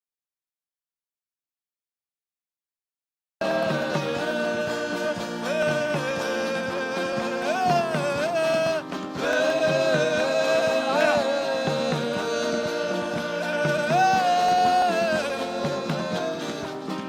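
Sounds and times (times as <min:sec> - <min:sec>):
soft instrumental backing: 0:03.4 - 0:17.0
wordless vocal line: 0:03.4 - 0:17.0.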